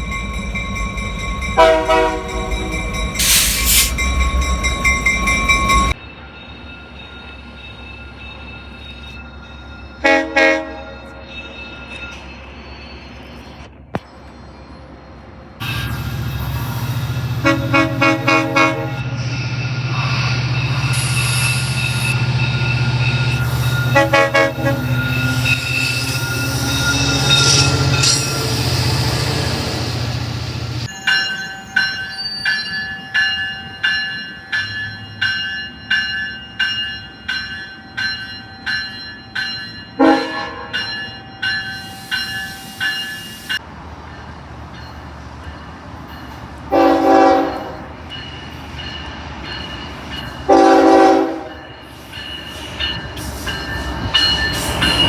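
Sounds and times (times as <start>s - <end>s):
heavy train rumble: 0.0s - 55.0s
train horn blasts: 1.6s - 3.9s, 10.0s - 11.0s, 17.4s - 19.1s, 23.9s - 25.0s, 40.0s - 40.7s, 46.7s - 47.8s, 50.5s - 51.5s.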